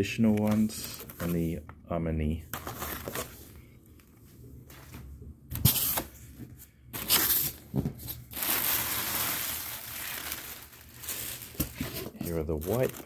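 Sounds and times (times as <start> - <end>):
paper wrapping rustling: 2.5 - 3.5, 7.0 - 13.0.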